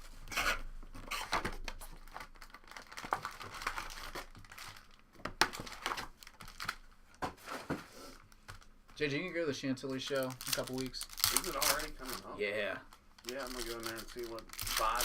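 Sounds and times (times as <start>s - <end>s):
card pack wrappers crinkling: 1.7s - 6.9s, 10.0s - 15.0s.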